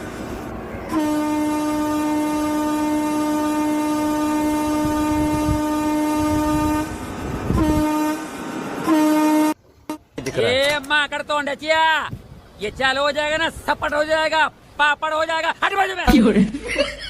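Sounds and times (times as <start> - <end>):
train horn blasts: 0.8 - 10.1.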